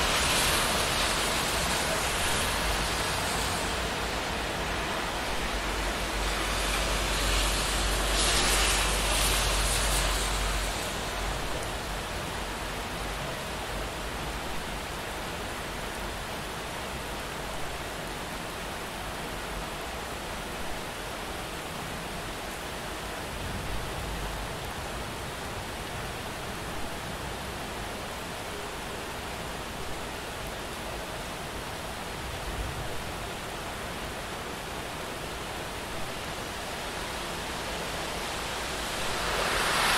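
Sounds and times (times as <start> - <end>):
car passing on wet road: 0.0 - 14.4, 35.2 - 39.9
steady rain falling: 0.0 - 39.9.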